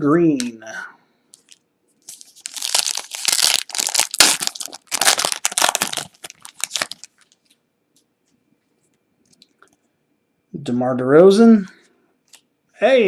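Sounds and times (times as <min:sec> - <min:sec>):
plastic wrapper crinkling: 0:01.4 - 0:07.6.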